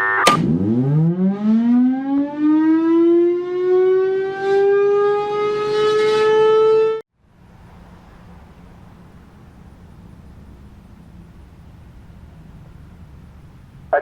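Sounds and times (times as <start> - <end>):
warning siren wailing: 0.0 - 7.0.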